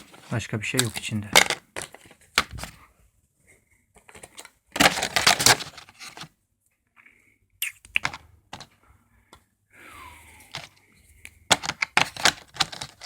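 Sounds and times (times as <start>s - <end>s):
plastic objects clicking: 0.0s - 2.7s, 4.0s - 6.3s, 7.7s - 9.4s, 10.5s - 13.0s.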